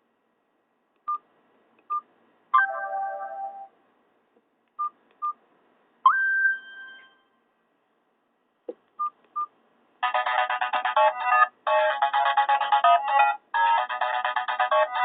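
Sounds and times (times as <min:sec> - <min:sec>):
phone ringtone snippets: 0:10.0 - 0:15.0.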